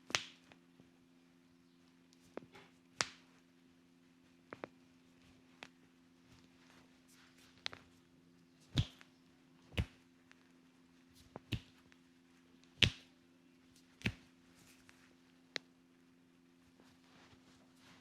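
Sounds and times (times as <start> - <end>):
hand slaps on body: 0.1 - 0.5, 3.0 - 3.2, 8.7 - 9.1, 9.8 - 10.0, 11.2 - 11.8, 12.8 - 13.1, 14.0 - 14.3.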